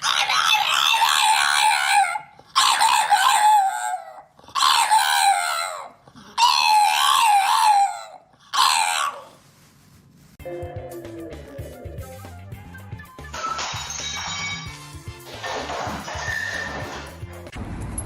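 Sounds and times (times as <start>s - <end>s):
dog howling: 0.0s - 9.4s.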